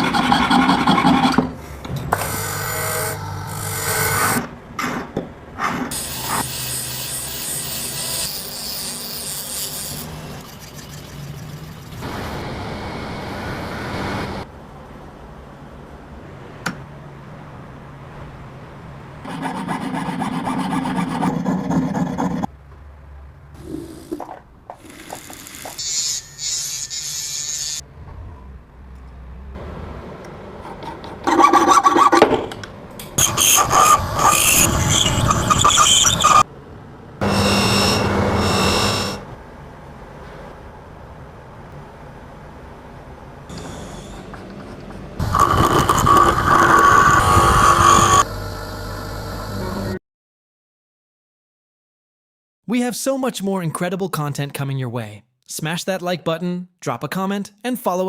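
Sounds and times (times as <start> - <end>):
rasping and filing strokes: 19.3 - 22.5, 25.5 - 27.8, 33.2 - 36.4, 45.2 - 48.3.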